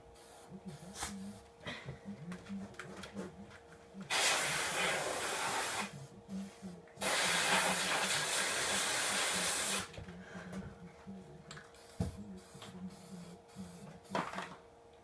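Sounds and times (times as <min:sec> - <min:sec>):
aerosol spray can hissing: 0:04.1 - 0:05.9, 0:07.0 - 0:09.9.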